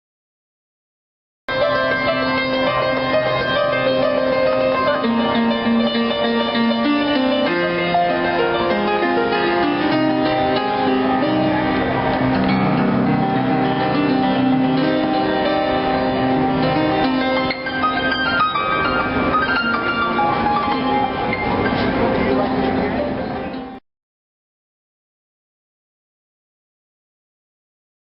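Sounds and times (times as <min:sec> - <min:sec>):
plucked string instrument melody: 0:01.5 - 0:23.8.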